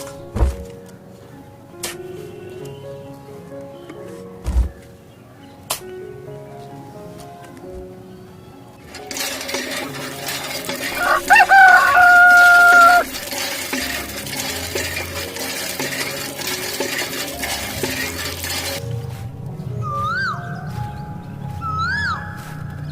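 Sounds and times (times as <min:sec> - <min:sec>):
chickens clucking: 0:08.8 - 0:18.8
rooster crowing: 0:10.9 - 0:13.2.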